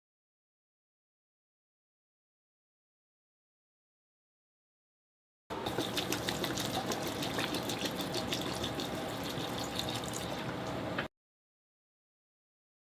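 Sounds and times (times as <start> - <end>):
water pouring from a bottle: 5.7 - 10.6.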